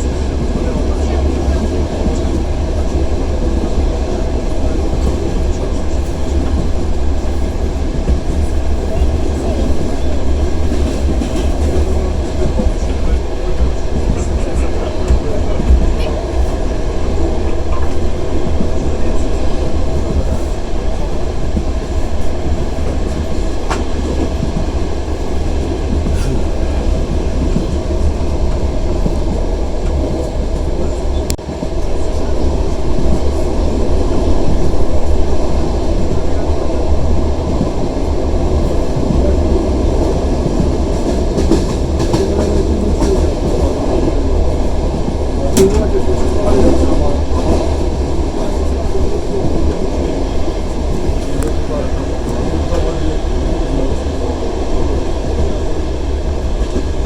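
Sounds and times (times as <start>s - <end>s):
train wheels rumbling on rails: 0.0s - 57.0s.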